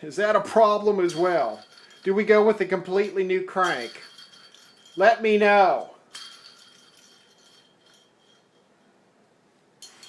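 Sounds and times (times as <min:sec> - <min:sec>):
metal engine part clinking: 0:01.1 - 0:08.8.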